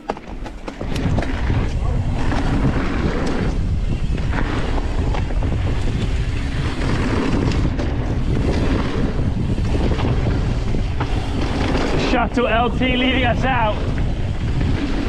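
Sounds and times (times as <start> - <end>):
bike clicks and clatter: 0.0 - 15.0
tyre roar on dirt: 0.0 - 15.0
wind on microphone: 0.0 - 15.0.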